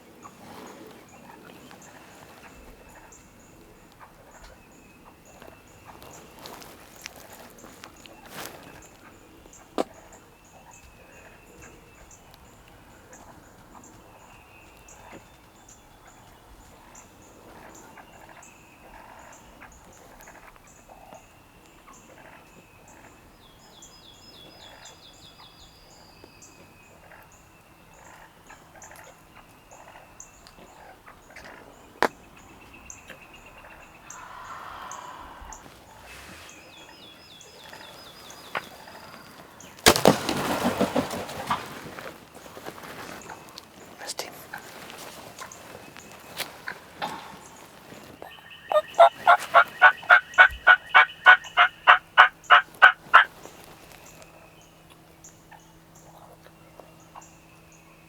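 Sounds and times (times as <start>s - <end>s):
small birds chirping: 0.0s - 58.0s
turkey gobbling: 33.6s - 36.7s, 37.7s - 42.2s, 46.6s - 53.4s.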